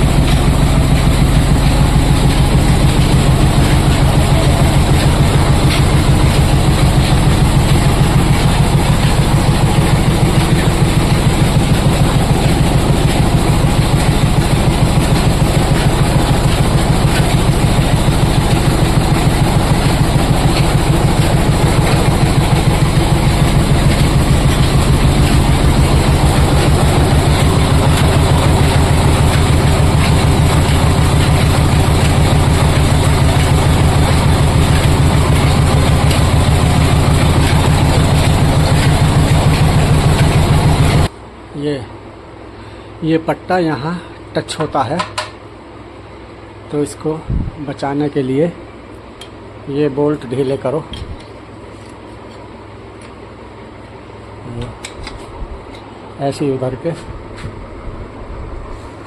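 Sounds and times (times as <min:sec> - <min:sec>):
machine clattering: 0:00.0 - 0:41.1.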